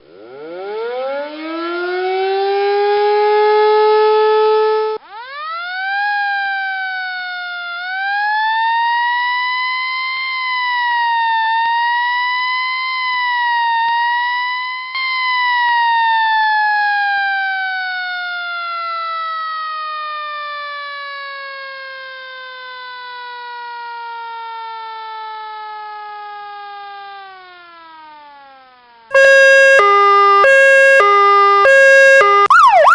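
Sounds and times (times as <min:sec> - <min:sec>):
air-raid siren winding: 0:29.1 - 0:32.9.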